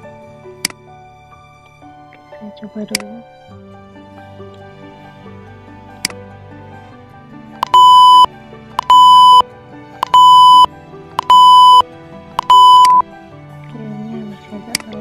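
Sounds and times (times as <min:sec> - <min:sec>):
soft background music: 0:00.0 - 0:15.0
loud electronic beeps: 0:07.6 - 0:09.4, 0:10.0 - 0:11.8, 0:12.4 - 0:13.0.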